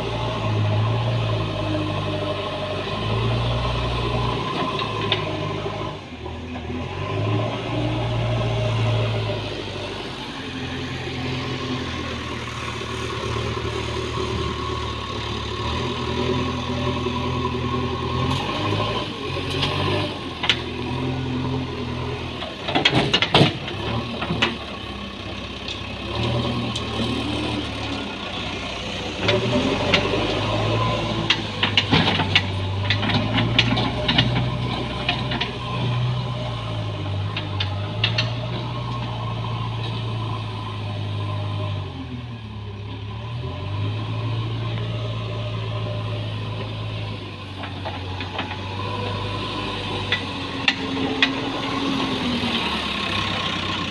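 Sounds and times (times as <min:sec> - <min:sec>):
diesel engine running: 0:00.0 - 0:53.9.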